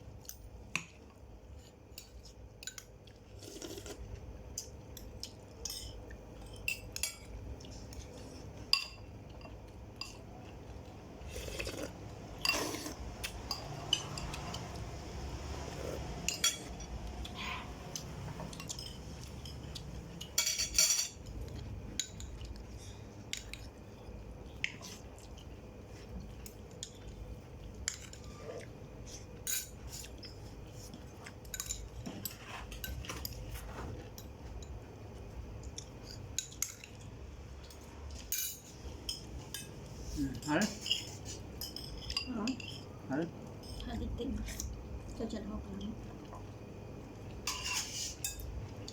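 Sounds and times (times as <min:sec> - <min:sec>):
cutlery clinking on plates: 0:20.4 - 0:21.2, 0:47.5 - 0:48.5.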